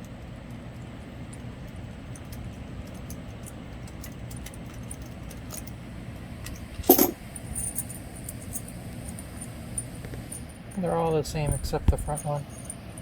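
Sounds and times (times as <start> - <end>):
metal bolts clinking: 6.4 - 9.2
ringing metal clink: 6.9 - 8.7.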